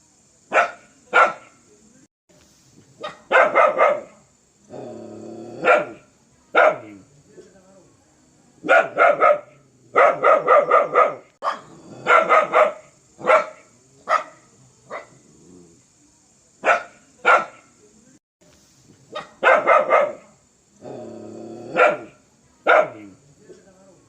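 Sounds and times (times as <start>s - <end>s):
dog barking aggressively: 0.5s - 1.5s, 3.0s - 4.2s, 5.6s - 6.0s, 6.6s - 6.9s, 8.6s - 15.2s, 16.6s - 17.6s, 19.1s - 20.4s, 21.7s - 23.1s.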